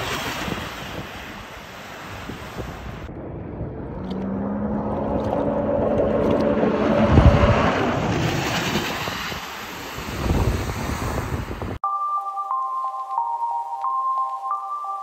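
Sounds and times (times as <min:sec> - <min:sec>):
wind noise on microphone: 0:00.0 - 0:11.8
personal watercraft engine passing: 0:01.7 - 0:10.9.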